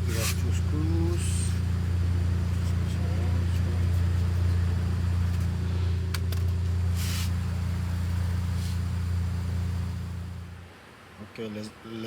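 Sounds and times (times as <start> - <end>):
car engine humming: 0.0 - 10.7
short scrape: 6.9 - 7.5, 8.6 - 8.9.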